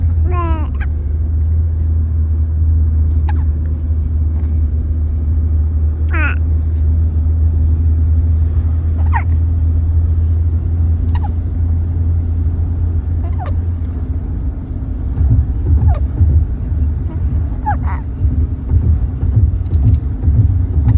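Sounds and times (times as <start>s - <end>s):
steady low rumble: 0.0s - 20.9s
baby hiccuping: 9.0s - 9.4s.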